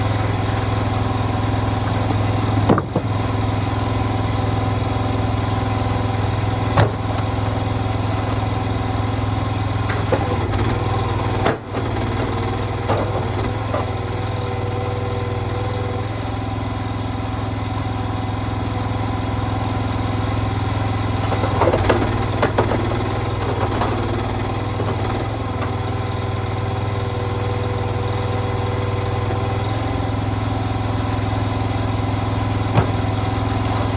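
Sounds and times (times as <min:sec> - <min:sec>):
engine idling: 0:00.0 - 0:33.9
sharp knocks and clatters: 0:01.8 - 0:03.3, 0:06.6 - 0:08.7, 0:09.8 - 0:14.3, 0:21.1 - 0:26.1, 0:32.6 - 0:33.9.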